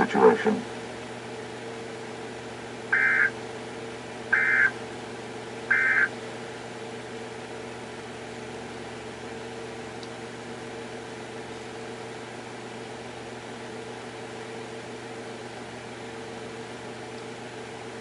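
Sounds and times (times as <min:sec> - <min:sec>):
steady low hum: 0:00.0 - 0:18.0
buzzy digital data chirps: 0:03.0 - 0:03.3, 0:04.4 - 0:04.7, 0:05.7 - 0:06.1.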